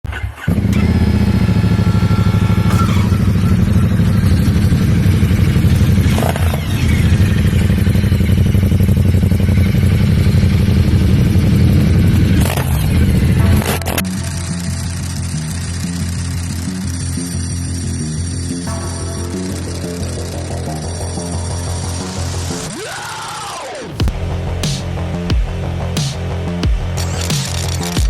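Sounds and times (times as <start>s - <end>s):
motorcycle engine running: 0.4s - 22.7s.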